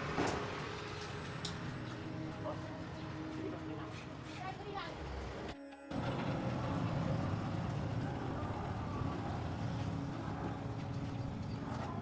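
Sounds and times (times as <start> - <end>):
truck engine running: 5.9 - 12.0.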